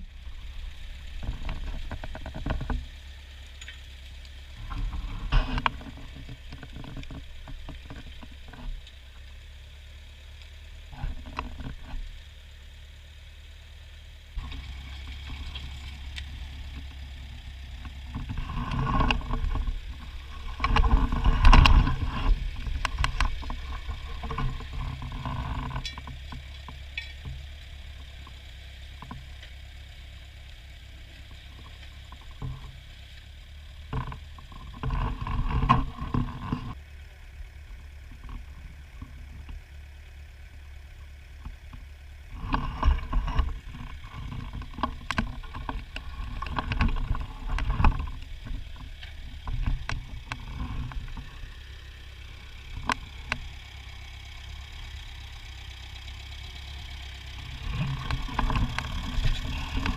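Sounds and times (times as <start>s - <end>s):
tractor engine running: 0.0s - 59.9s.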